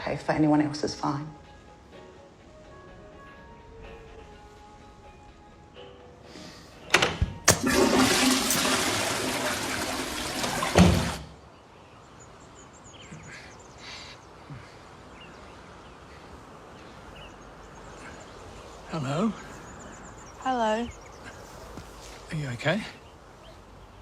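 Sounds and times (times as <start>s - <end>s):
water rushing: 7.5s - 11.5s.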